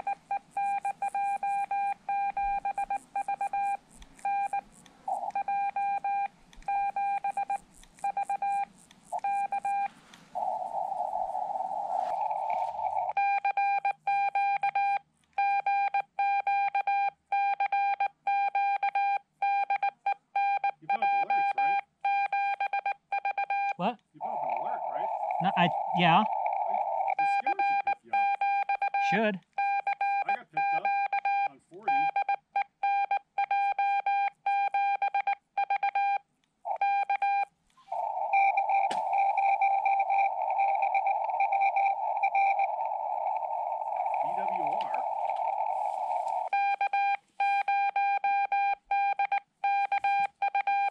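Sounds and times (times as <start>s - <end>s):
receiver hiss: 0.0s - 13.2s, 23.8s - 28.3s, 37.8s - 47.6s
morse code tone: 0.0s - 19.8s, 20.4s - 50.9s
click: 6.5s - 6.8s.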